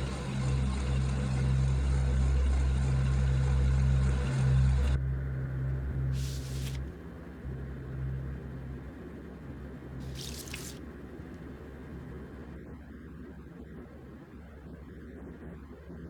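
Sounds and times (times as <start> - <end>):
low rumbling drone: 0.0 - 10.0.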